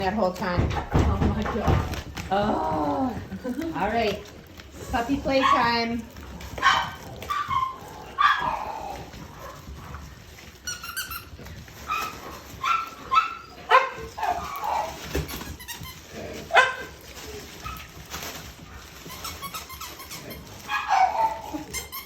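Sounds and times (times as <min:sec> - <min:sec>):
puppies barking and yelping: 0:04.4 - 0:22.0.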